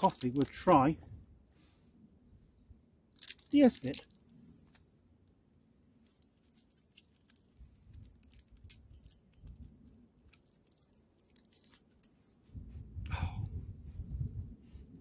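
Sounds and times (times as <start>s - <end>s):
foil crinkling: 10.3s - 12.1s.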